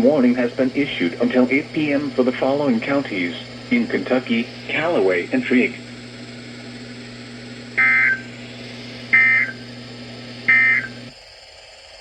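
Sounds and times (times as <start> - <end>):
low hum: 0.0 - 11.2
buzzy warbling data bursts: 7.8 - 8.4, 9.1 - 9.7, 10.5 - 11.1.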